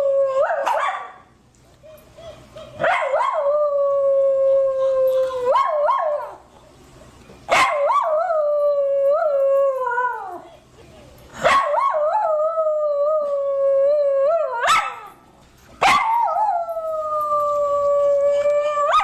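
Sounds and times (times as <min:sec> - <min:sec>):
dog howling: 0:15.8 - 0:19.0.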